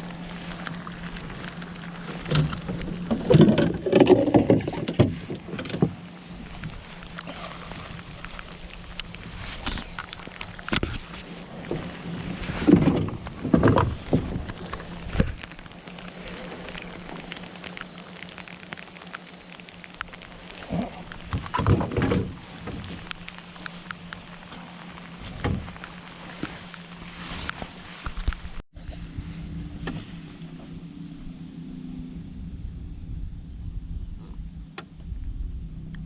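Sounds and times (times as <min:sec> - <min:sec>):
rain falling: 0:00.0 - 0:04.3, 0:05.2 - 0:28.6.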